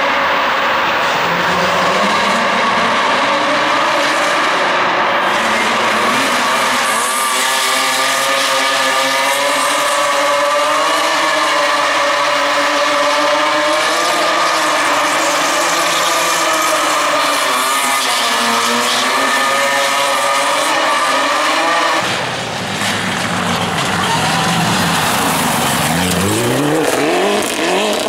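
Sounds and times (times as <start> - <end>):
car engine revving: 0.2 - 28.0.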